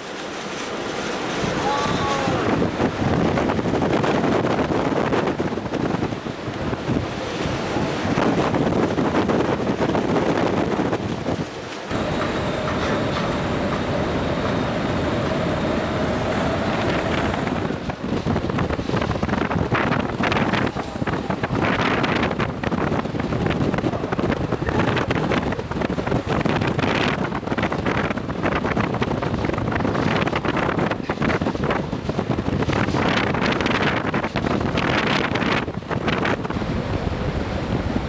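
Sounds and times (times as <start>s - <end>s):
wind buffeting microphone: 0.0s - 38.0s.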